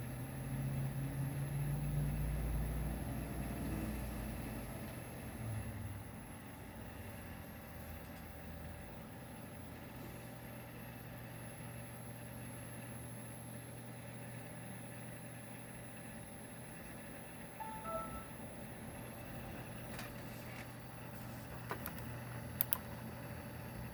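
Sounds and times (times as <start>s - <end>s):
computer low hum: 0.2s - 23.9s
hard drive high whine: 4.3s - 20.0s.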